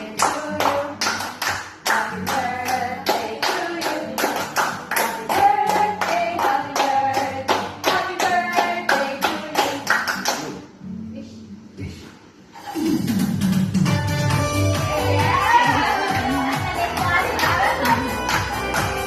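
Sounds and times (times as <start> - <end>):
rhythmic hand claps: 0.0 - 10.7, 13.2 - 19.0
voices singing: 1.9 - 9.8.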